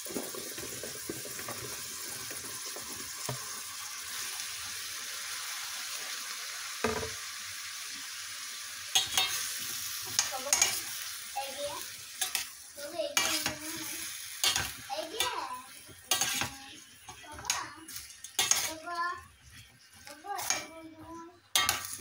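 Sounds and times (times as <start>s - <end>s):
food sizzling in oil: 0.0s - 22.0s
spoon scraping a pot: 8.9s - 9.5s, 10.1s - 10.9s, 14.4s - 15.4s, 16.1s - 22.0s.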